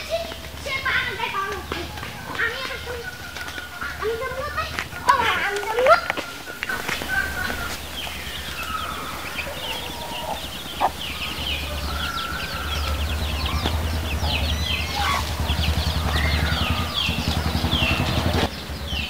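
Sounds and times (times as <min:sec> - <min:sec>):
birds chirping: 0:00.0 - 0:19.0
low hum: 0:06.7 - 0:19.0.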